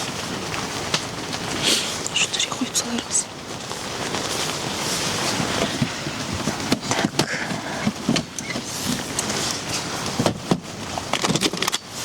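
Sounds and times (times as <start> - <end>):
rain hissing: 0.0 - 11.1.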